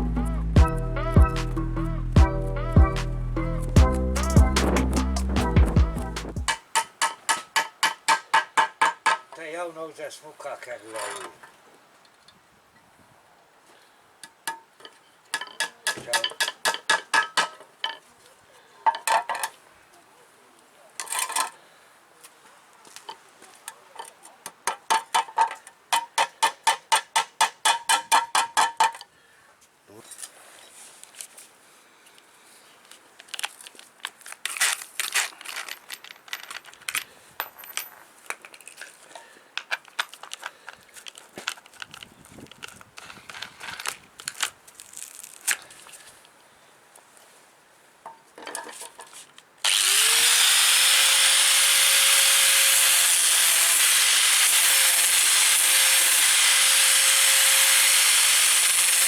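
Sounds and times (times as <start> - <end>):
metal shovel parts clicking: 21.0 - 21.6, 33.2 - 39.0.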